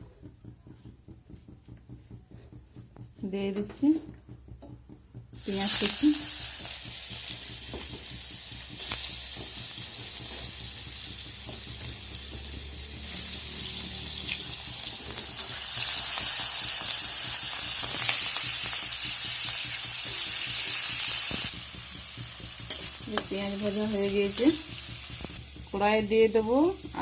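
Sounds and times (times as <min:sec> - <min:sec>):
onion sizzling in oil: 0:05.4 - 0:27.0.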